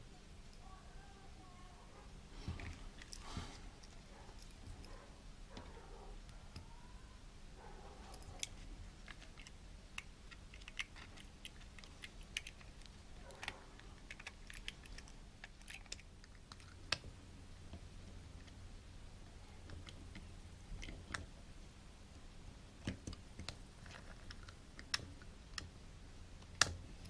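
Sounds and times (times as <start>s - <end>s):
low steady hum: 0.0s - 27.0s
small parts clicking and tapping: 2.5s - 6.8s, 8.0s - 18.6s, 19.6s - 21.4s, 22.8s - 25.8s, 26.4s - 27.0s.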